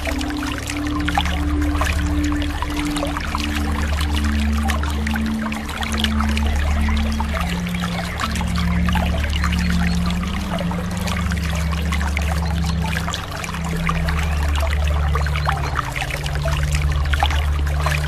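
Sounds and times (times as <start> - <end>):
low steady drone: 0.0 - 18.0
sea water splashing: 0.0 - 18.0.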